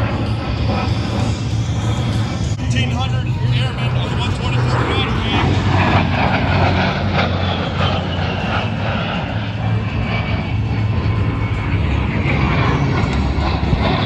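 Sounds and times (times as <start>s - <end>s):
airplane engine roar: 0.0s - 14.0s.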